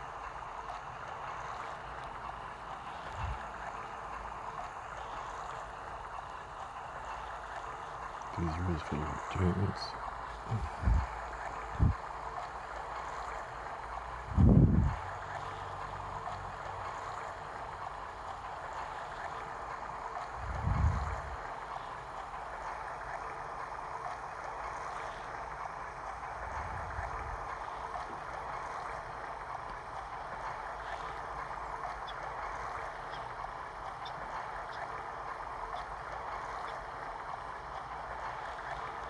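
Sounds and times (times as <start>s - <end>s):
white noise hiss: 6.3s - 13.1s.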